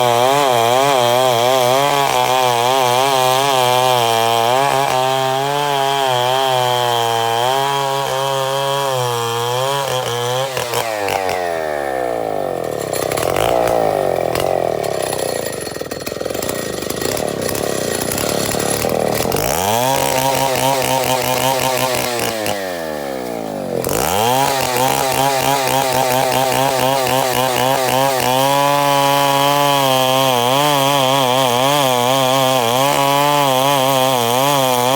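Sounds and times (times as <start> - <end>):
chainsaw cutting wood: 0.0 - 34.9.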